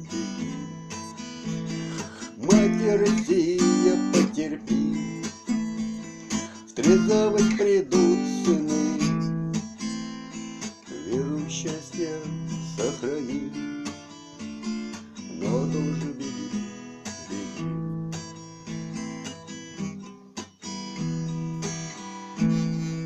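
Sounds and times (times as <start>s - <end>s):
acoustic guitar strumming chords: 0.0s - 23.0s.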